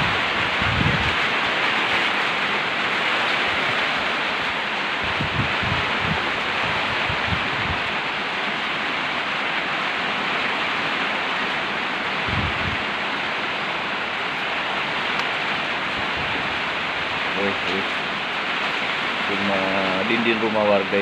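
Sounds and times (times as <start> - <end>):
wind buffeting microphone: 0.0 - 2.5, 3.3 - 8.2, 12.1 - 13.0, 15.0 - 18.9
heavy rain hissing: 0.0 - 21.0.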